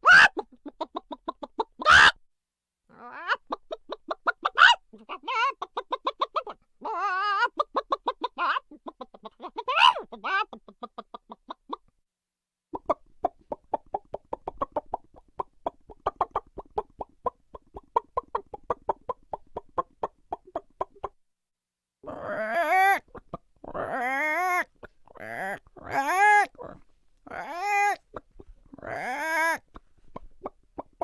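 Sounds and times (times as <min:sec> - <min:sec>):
chickens clucking: 0:00.1 - 0:01.9, 0:03.3 - 0:11.9, 0:12.7 - 0:21.2, 0:22.0 - 0:31.0.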